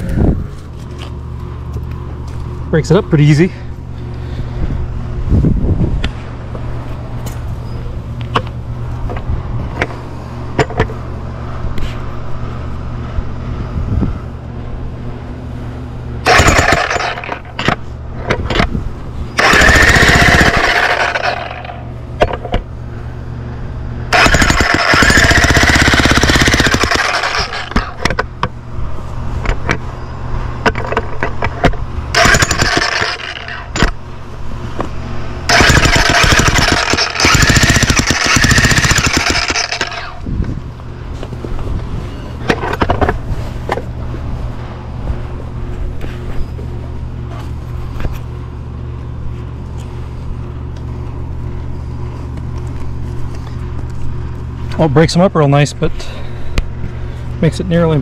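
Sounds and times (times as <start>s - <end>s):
steady low hum: 0.0s - 58.0s
jackhammer hammering concrete: 16.2s - 17.7s, 19.4s - 21.8s, 24.1s - 28.1s, 32.1s - 34.0s, 35.5s - 40.2s.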